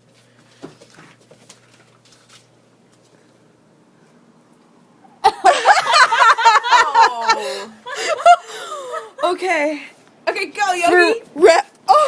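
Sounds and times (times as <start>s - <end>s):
person laughing loudly: 5.2s - 9.2s.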